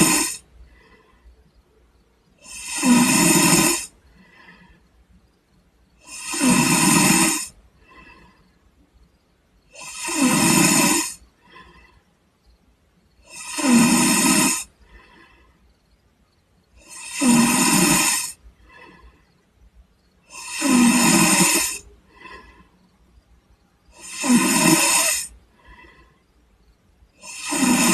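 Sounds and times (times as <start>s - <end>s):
man snoring heavily: 0.0s - 1.1s, 2.4s - 4.8s, 6.0s - 8.4s, 9.7s - 12.0s, 13.2s - 15.5s, 16.7s - 19.2s, 20.2s - 22.8s, 23.8s - 26.2s, 27.2s - 27.9s
short breath: 4.0s - 5.0s, 7.8s - 8.6s, 21.8s - 23.0s, 25.5s - 26.4s.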